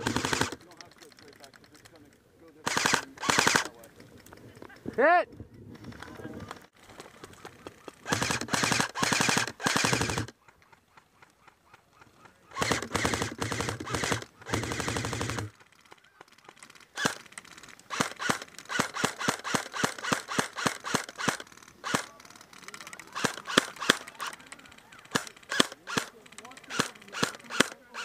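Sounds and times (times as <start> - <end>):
airsoft guns firing: 0.0 - 0.7, 2.6 - 3.8, 7.8 - 10.4, 12.5 - 28.0.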